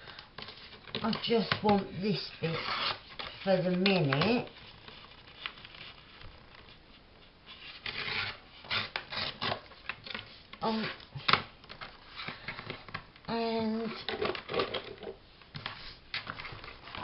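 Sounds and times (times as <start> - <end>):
paper tearing and rustling: 0.4 - 6.8, 7.5 - 10.0.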